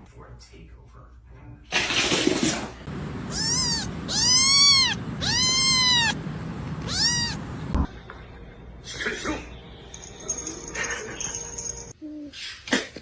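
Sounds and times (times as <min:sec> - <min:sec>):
cat meowing: 0:03.2 - 0:07.8.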